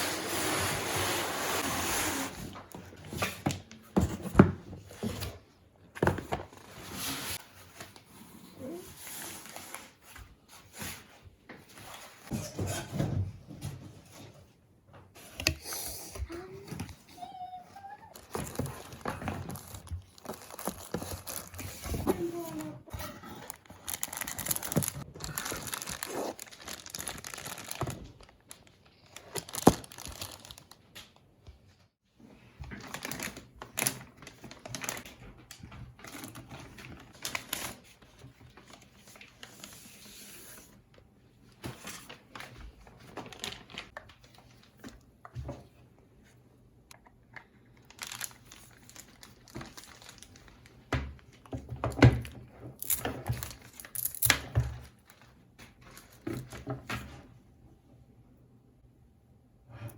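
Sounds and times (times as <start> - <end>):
packaging crinkling and rustling: 18.1 - 31.2, 32.6 - 40.8, 41.4 - 45.1, 47.4 - 57.1.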